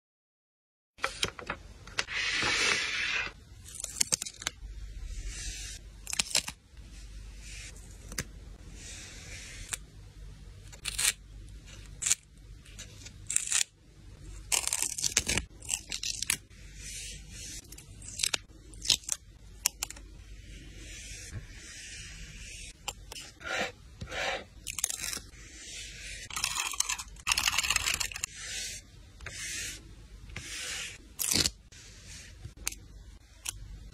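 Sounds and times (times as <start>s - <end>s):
paper and stickers rustling: 24.7s - 28.6s.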